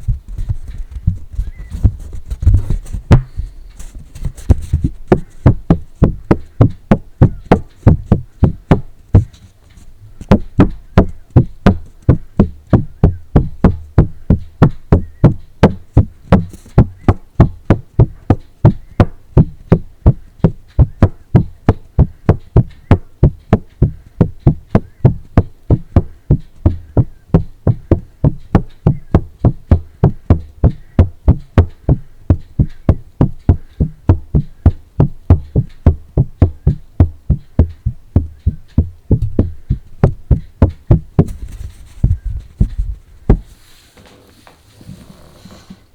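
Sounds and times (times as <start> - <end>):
tapping on paper: 0.4 - 43.5.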